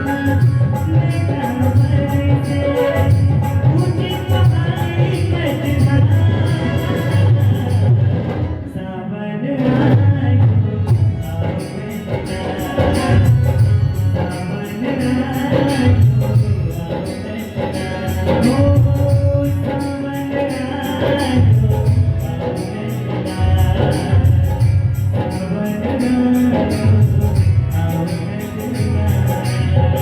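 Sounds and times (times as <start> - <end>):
jingling percussion: 0.0 - 8.4, 10.9 - 30.0
low drum beats: 10.0 - 11.5.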